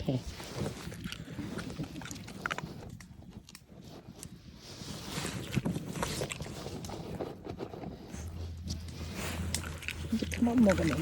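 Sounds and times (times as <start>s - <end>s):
dogs chewing food: 0.0s - 11.0s
low steady hum: 0.0s - 11.0s.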